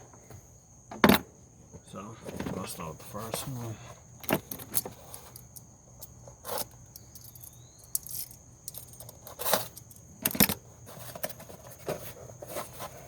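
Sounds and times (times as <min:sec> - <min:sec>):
metal hand tools clinking: 0:06.5 - 0:10.6.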